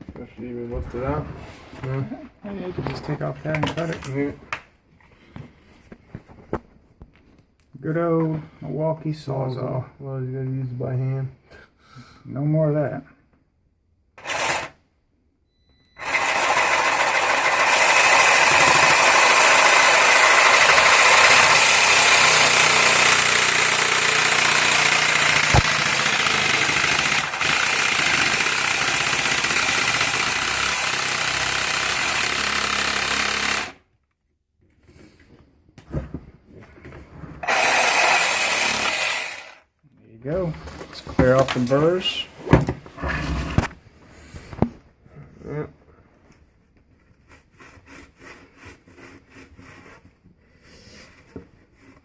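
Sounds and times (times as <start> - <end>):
reciprocating saw cutting pipe: 14.2 - 14.8, 16.0 - 33.8, 37.4 - 39.6.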